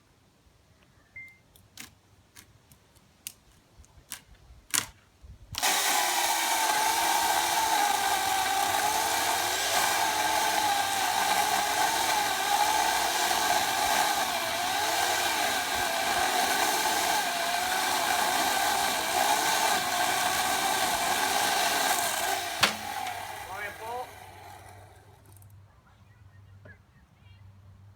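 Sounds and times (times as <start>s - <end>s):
power tool motor running: 5.6s - 25.3s.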